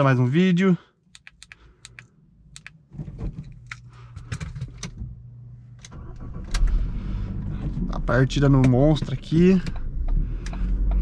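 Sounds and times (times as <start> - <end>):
sharp handling clicks: 1.1 - 2.8
low steady hum: 1.4 - 11.0.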